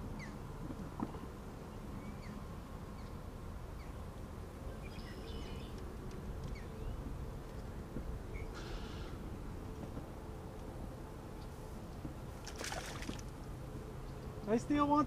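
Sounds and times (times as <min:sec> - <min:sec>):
birds chirping: 0:04.6 - 0:09.2.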